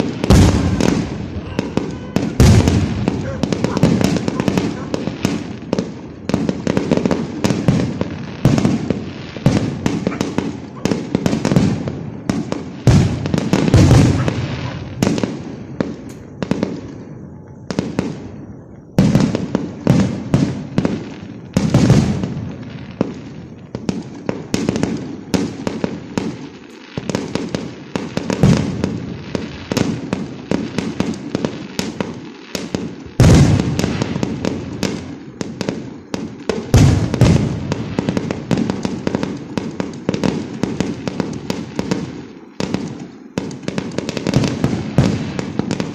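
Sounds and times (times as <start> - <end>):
deep fireworks bangs: 0.0 - 45.9
fireworks bangs and crackles: 0.0 - 45.9.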